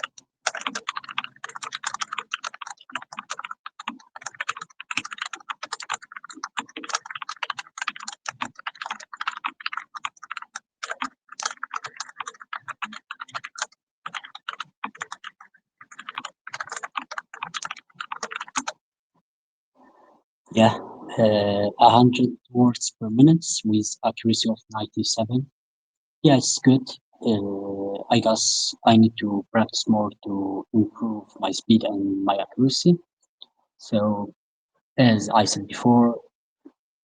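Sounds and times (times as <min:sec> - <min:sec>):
fast typing on keyboard: 0:00.0 - 0:18.8.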